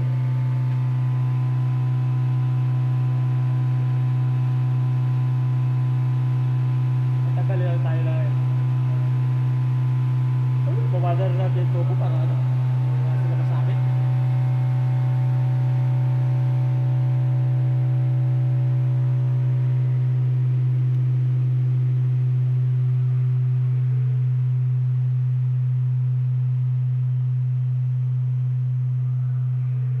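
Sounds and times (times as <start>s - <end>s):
deep electrical hum: 0.0s - 30.0s.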